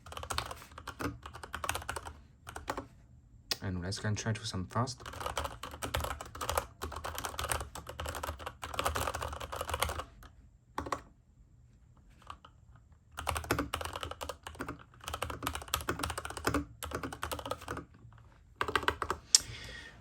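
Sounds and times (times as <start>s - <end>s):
fast typing on mechanical keyboard: 0.0s - 2.8s, 5.0s - 11.1s, 13.1s - 17.9s, 18.6s - 19.2s.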